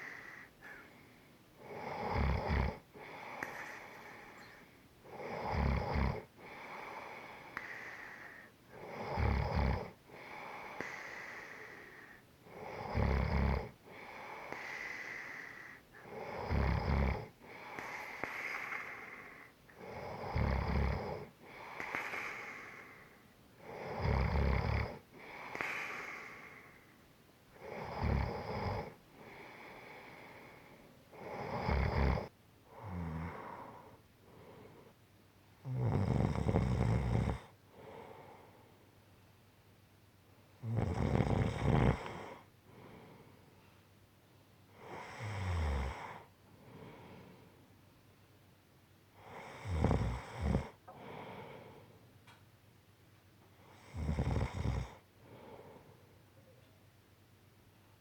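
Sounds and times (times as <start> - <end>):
person snoring: 1.6 - 4.4, 5.1 - 26.8, 27.6 - 34.9, 35.6 - 38.3, 40.6 - 43.1, 44.8 - 47.2, 49.2 - 51.6, 53.7 - 55.8.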